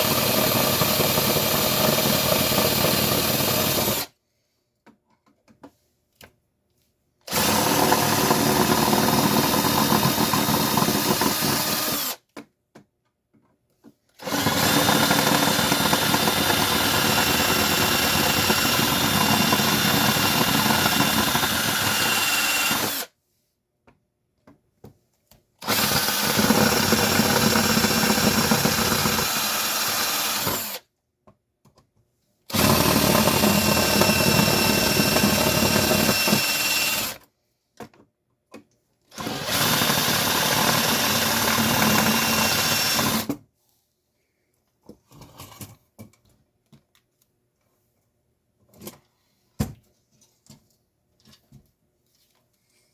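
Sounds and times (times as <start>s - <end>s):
electric drill drilling: 0.0s - 4.1s, 7.3s - 12.2s, 14.2s - 23.1s, 25.6s - 30.8s, 32.5s - 37.2s, 39.2s - 43.3s.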